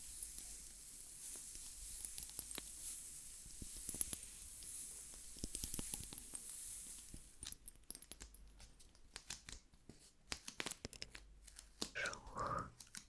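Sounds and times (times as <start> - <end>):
soft brushing hiss: 0.0 - 7.4
crisp clicks and crackles: 1.4 - 3.0, 3.7 - 13.0.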